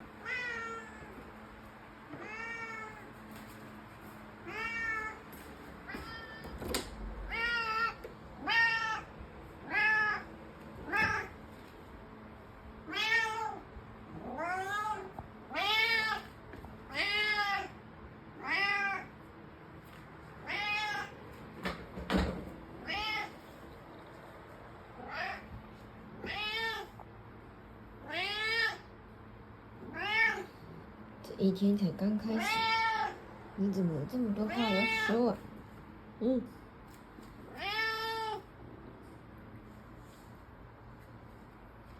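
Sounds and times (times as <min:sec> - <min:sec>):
cat meowing: 0:00.2 - 0:01.1, 0:02.2 - 0:03.0, 0:04.4 - 0:05.2, 0:05.9 - 0:06.6, 0:07.2 - 0:11.3, 0:12.9 - 0:13.6, 0:14.2 - 0:16.3, 0:16.9 - 0:17.8, 0:18.4 - 0:19.1, 0:20.4 - 0:21.2, 0:22.8 - 0:23.4, 0:26.2 - 0:27.0, 0:28.0 - 0:28.9, 0:29.9 - 0:30.6, 0:32.4 - 0:33.2, 0:34.5 - 0:35.2, 0:37.5 - 0:38.5.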